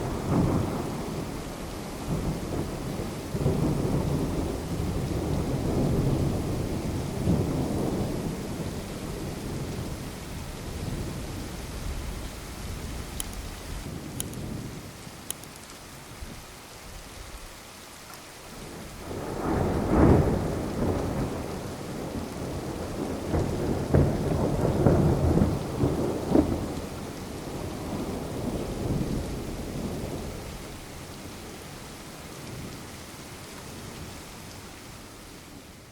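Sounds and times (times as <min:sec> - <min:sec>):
steady rain: 0:00.0 - 0:35.9
thunder rolling: 0:19.0 - 0:30.5.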